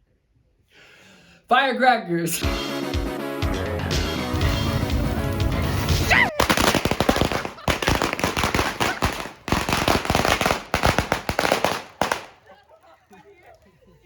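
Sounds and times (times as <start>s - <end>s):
music: 2.4s - 6.3s
firecrackers popping: 4.4s - 13.7s.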